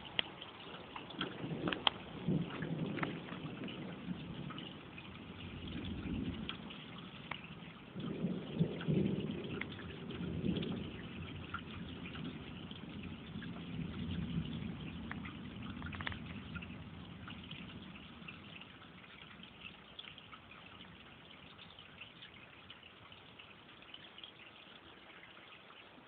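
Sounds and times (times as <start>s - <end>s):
raindrops ticking: 0.0s - 26.0s
thunder rumbling: 0.8s - 19.8s.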